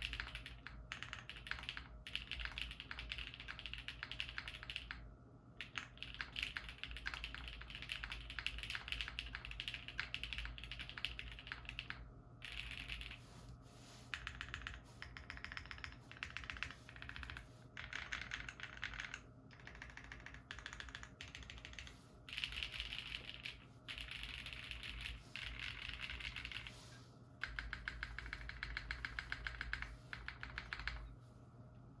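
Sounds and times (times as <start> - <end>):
mechanical keyboard typing: 0.0 - 5.0, 5.6 - 13.2, 14.1 - 26.8, 27.4 - 31.1.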